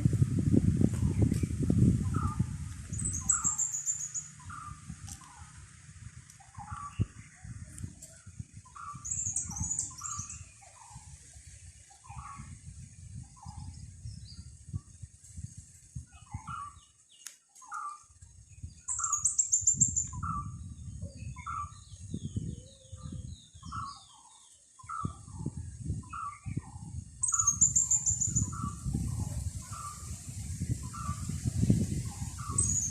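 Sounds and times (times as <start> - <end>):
wind buffeting microphone: 0.0 - 17.0, 18.1 - 24.2, 24.8 - 32.9
high rapid bird trill: 3.0 - 4.8, 27.2 - 28.8.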